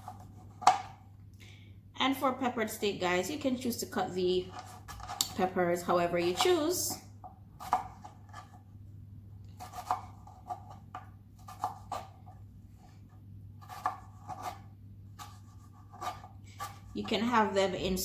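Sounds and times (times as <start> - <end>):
knife cutting on board: 0.0 - 1.0, 7.6 - 8.6, 9.6 - 12.4, 13.6 - 17.0
faint low hum: 0.0 - 18.0.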